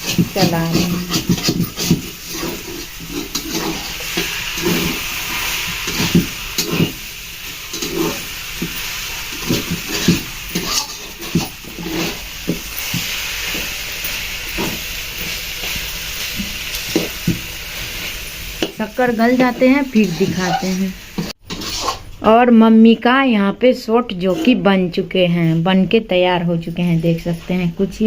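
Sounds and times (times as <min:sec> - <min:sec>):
food sizzling in a pan: 0:00.0 - 0:22.1
stirring scrapes against pan: 0:00.0 - 0:22.1, 0:24.2 - 0:24.7.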